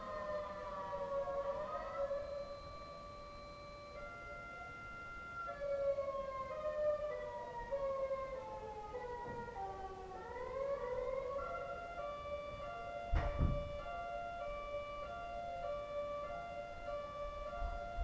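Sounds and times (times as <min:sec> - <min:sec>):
siren stepped tones: 0:01.2 - 0:06.6
thump: 0:13.2 - 0:13.9.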